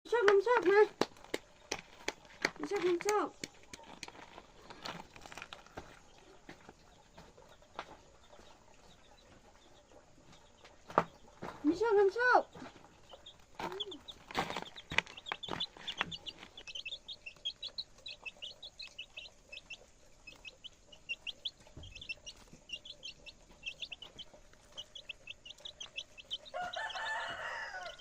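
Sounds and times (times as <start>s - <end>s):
chicks peeping: 0.1s - 28.0s
hen clucking: 5.6s - 28.0s.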